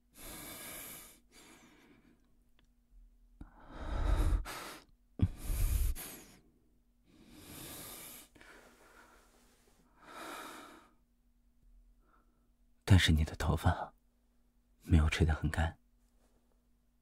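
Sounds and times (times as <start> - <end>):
man breathing heavily: 0.0 - 2.3, 3.4 - 11.0.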